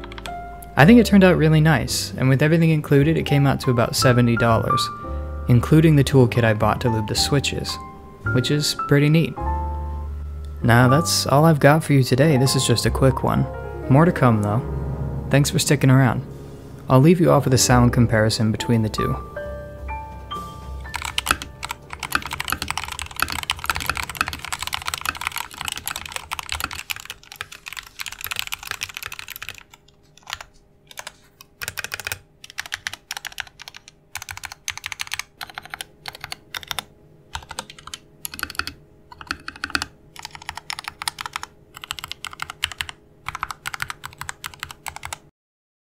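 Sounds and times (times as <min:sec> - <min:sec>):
mechanical keyboard typing: 0:00.0 - 0:00.4, 0:20.8 - 0:45.3.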